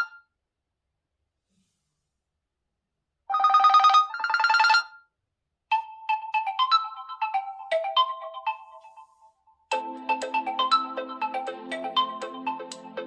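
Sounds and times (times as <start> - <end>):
bell-like ringtone melody: 5.7 - 13.0
electronic ringtone trills: 5.7 - 13.0.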